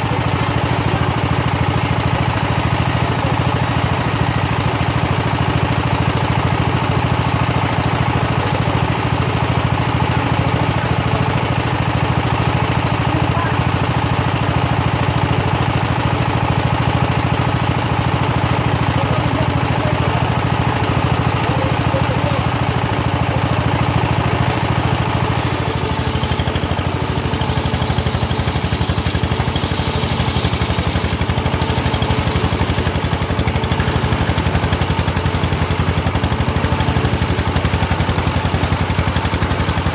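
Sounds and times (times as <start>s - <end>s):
circular saw running: 0.0s - 39.9s
saw blade hissing through wood: 23.7s - 33.0s.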